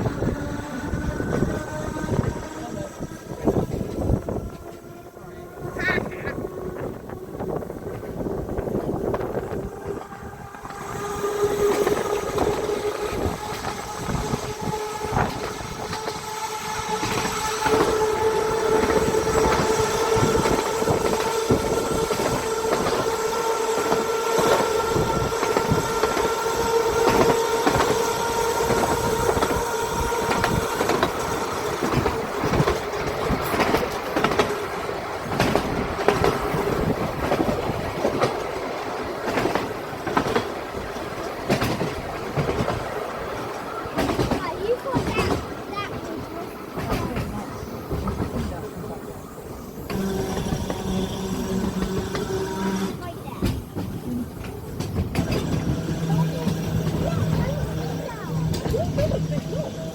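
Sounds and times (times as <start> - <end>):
tram motor whine: 0.0 - 59.9
wheels clicking over rail joints: 0.0 - 59.9.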